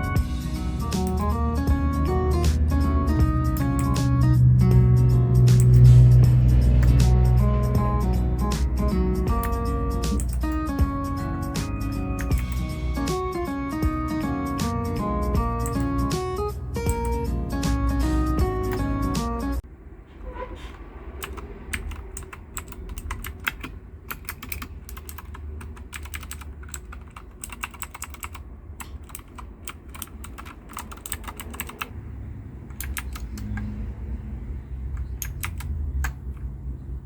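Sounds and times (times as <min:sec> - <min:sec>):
low steady rumble: 0:00.0 - 0:24.2
mechanical keyboard typing: 0:00.8 - 0:04.4, 0:05.5 - 0:06.0, 0:06.8 - 0:07.8, 0:08.8 - 0:19.2, 0:21.2 - 0:31.9, 0:32.7 - 0:33.6, 0:35.2 - 0:36.3.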